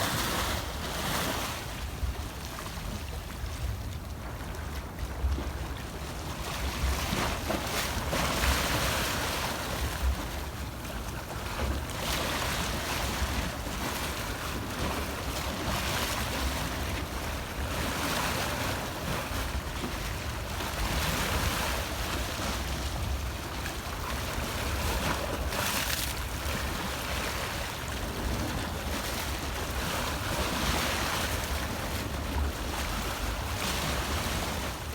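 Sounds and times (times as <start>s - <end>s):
ocean waves breaking: 0.0s - 2.2s.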